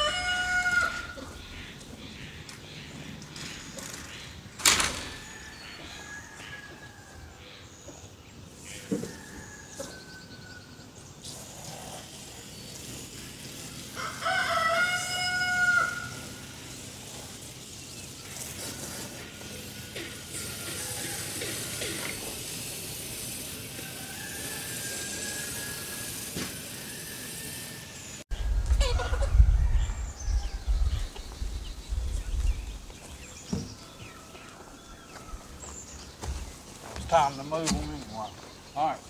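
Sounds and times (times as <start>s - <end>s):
bird and poultry calls: 0.0s - 11.2s, 12.7s - 39.0s
steady hiss: 11.2s - 28.3s
low rumble on microphone: 28.3s - 33.2s.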